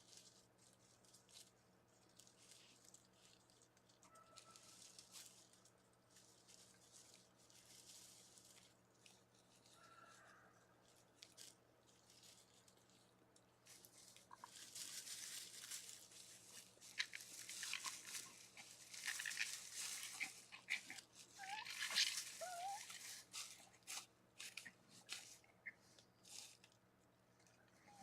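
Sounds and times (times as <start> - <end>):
raccoons rustling and crunching: 0.0 - 28.0
raccoon wavering squeals: 19.0 - 23.3.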